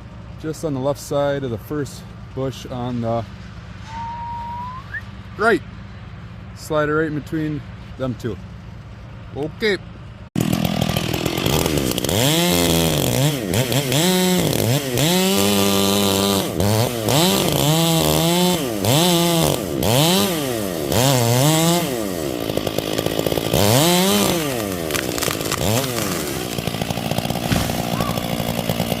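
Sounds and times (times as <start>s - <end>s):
chainsaw revving: 10.4s - 29.0s.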